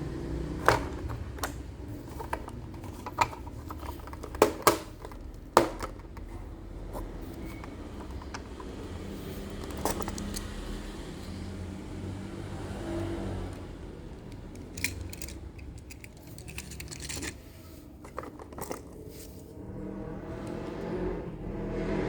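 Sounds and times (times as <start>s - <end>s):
toy trucks clicking and rattling: 0.6s - 6.5s, 7.2s - 10.8s, 13.0s - 19.4s.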